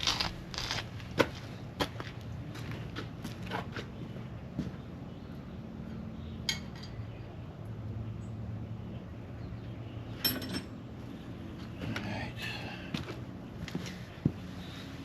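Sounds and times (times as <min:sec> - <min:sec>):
hand tools clinking on metal: 0:10.2 - 0:10.7.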